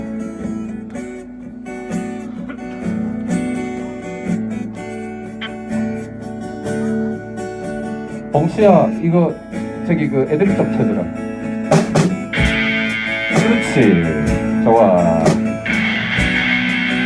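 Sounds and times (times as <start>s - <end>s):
guitar strumming chords: 0.0s - 17.0s.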